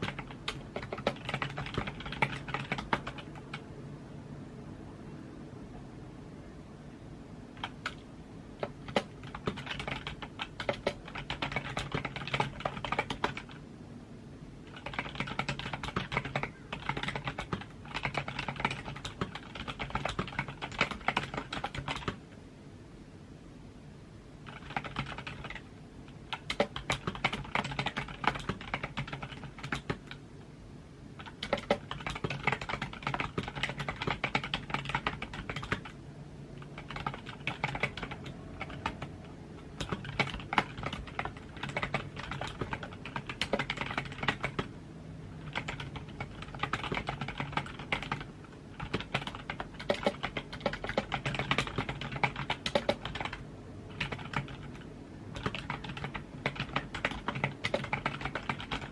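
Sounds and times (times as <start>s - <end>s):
typing on computer keyboard: 0.0s - 3.6s, 7.6s - 13.6s, 14.7s - 22.2s, 24.4s - 30.2s, 31.2s - 36.0s, 36.6s - 58.9s.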